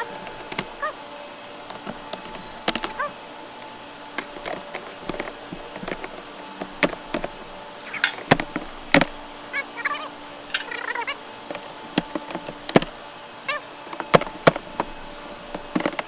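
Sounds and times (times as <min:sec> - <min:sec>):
high squeaky chirps: 0:07.8 - 0:08.2.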